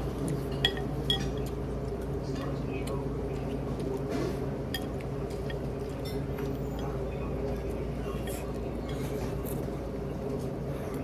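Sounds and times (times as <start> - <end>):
steady background hum: 0.0 - 11.0
cutlery and dishes clinking: 0.5 - 1.6.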